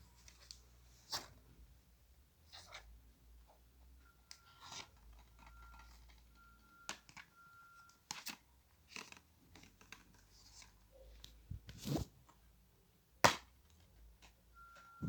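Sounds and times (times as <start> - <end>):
packaging clicks and rustles: 4.3 - 12.1.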